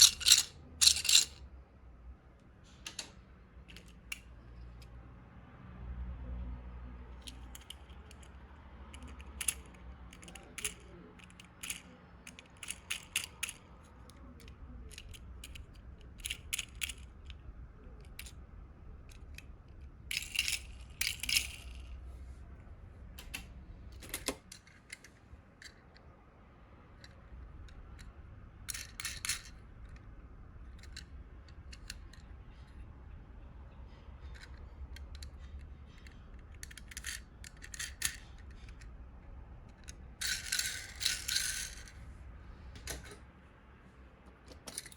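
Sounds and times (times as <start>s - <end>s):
toy cars clinking together: 0.0s - 1.4s, 8.9s - 13.7s, 14.3s - 17.4s, 20.1s - 21.9s, 28.7s - 29.6s, 34.3s - 38.9s, 39.7s - 42.0s
faint low hum: 0.0s - 44.9s.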